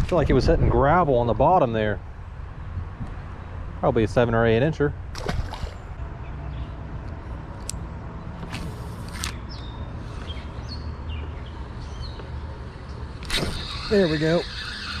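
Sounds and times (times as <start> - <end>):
bird chirping: 9.4 - 15.0.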